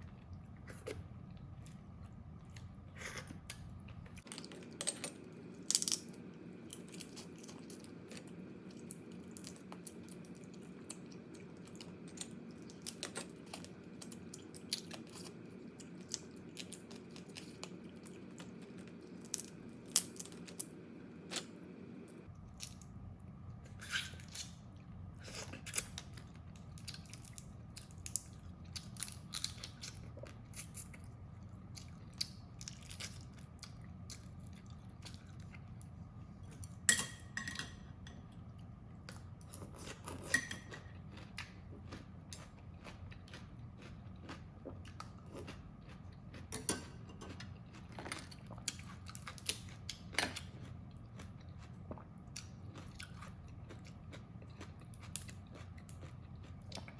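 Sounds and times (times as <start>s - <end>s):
chewing: 39.1s - 56.9s.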